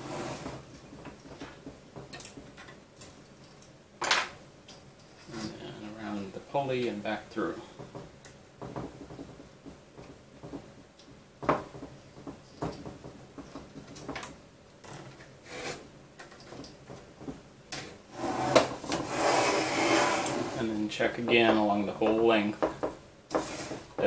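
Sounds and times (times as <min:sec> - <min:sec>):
belt rubbing and scraping: 0:14.9 - 0:15.9, 0:18.1 - 0:20.9, 0:23.3 - 0:24.0.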